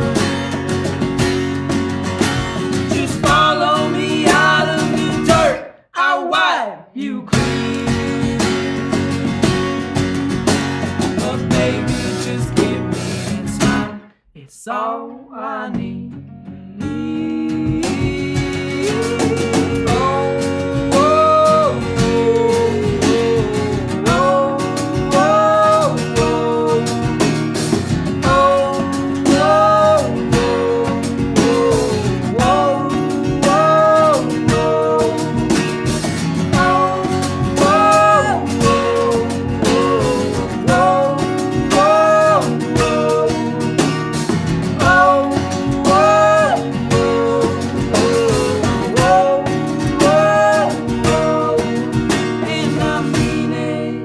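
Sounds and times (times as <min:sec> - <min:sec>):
guitar accompaniment: 0:00.0 - 0:05.7, 0:07.4 - 0:14.2, 0:15.8 - 0:54.0
melodic lead line: 0:19.0 - 0:52.4.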